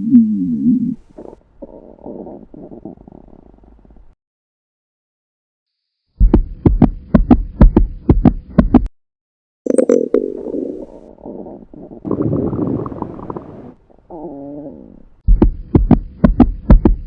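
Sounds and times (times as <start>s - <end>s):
stomach growling: 9.8s - 15.5s.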